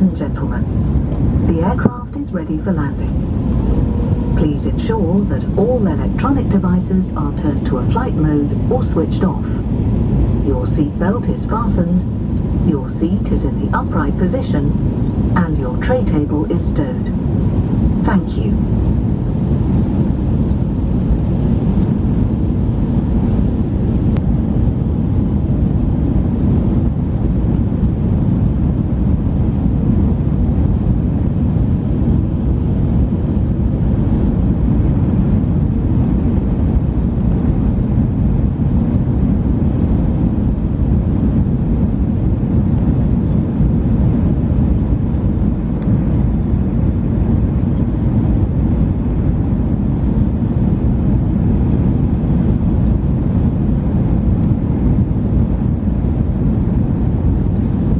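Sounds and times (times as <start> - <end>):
airplane cabin engine rumble: 0.0 - 57.9
rushing air: 3.0 - 6.1.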